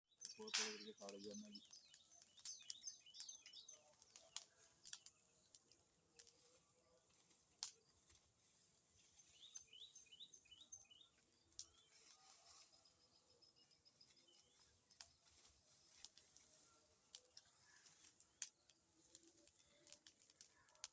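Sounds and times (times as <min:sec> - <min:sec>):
small birds chirping: 0:00.1 - 0:20.9
faint sharp clicks: 0:00.2 - 0:06.4, 0:07.6 - 0:07.8, 0:17.1 - 0:20.9.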